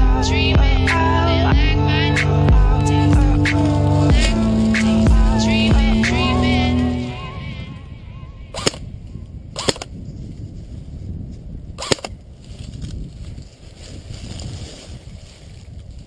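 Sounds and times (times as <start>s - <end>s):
wind rumble on microphone: 0.0s - 16.0s
airsoft gun shots: 8.6s - 8.8s, 9.6s - 9.9s, 11.8s - 12.1s.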